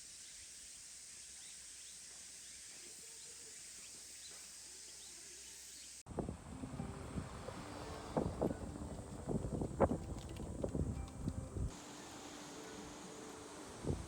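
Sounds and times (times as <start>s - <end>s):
steady high hiss: 0.0s - 14.0s
gusty wind buffeting microphone: 6.1s - 11.7s.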